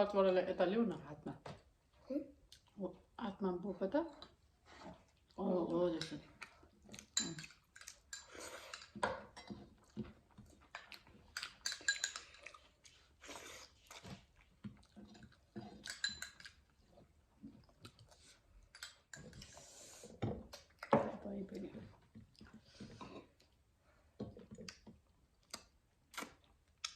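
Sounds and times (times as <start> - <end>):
people chewing and smacking: 1.9 - 2.8, 4.1 - 26.9
dishes clinking: 10.8 - 12.6, 15.6 - 16.6.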